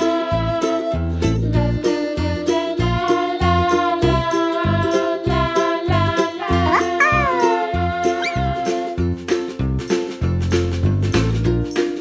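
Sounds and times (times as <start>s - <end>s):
upbeat children's music: 0.0s - 12.0s
cat meowing: 6.4s - 8.5s.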